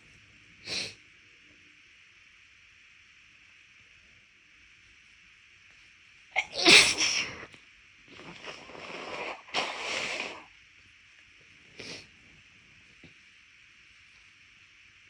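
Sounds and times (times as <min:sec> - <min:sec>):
sniff: 0:00.6 - 0:01.0, 0:08.2 - 0:10.5, 0:11.8 - 0:12.1
person blowing nose: 0:06.4 - 0:07.5, 0:08.2 - 0:10.5.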